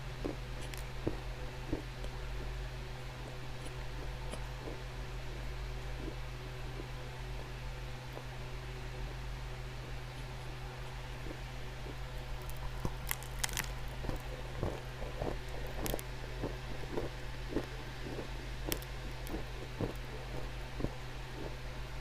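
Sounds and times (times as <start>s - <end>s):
clay crunching: 11.2s - 20.5s.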